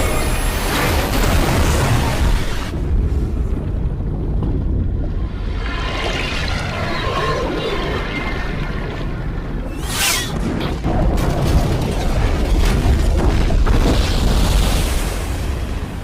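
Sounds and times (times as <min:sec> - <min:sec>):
action film music score: 0:00.0 - 0:16.0
deep booming rumble: 0:00.7 - 0:07.2
whoosh: 0:09.6 - 0:10.8.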